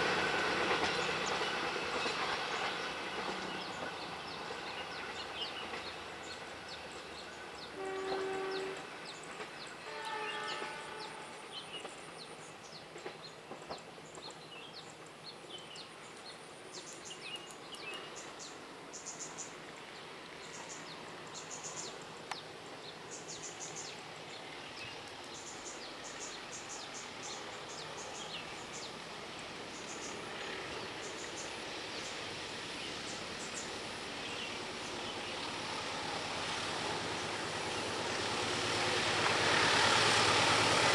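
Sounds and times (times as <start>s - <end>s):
outdoor ambience: 0.0s - 40.9s
distant train horn blasts: 2.8s - 11.8s.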